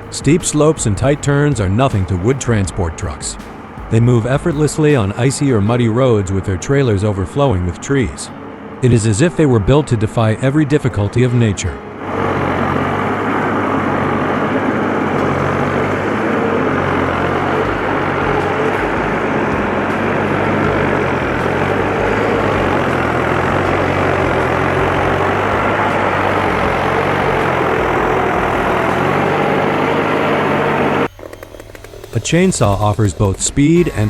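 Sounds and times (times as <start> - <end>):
heavy truck engine running: 0.0 - 33.8.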